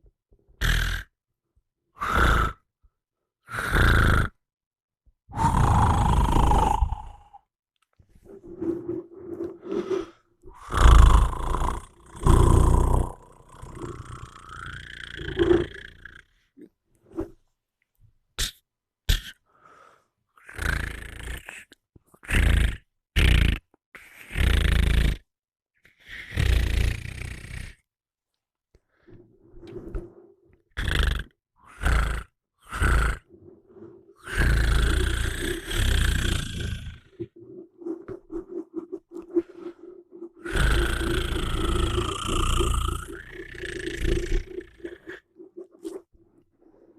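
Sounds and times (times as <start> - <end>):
person snoring: 0.6 - 1.1, 1.9 - 2.7, 3.4 - 4.4, 5.3 - 7.5, 8.3 - 16.4, 20.4 - 25.3, 26.0 - 27.8, 29.7 - 46.9.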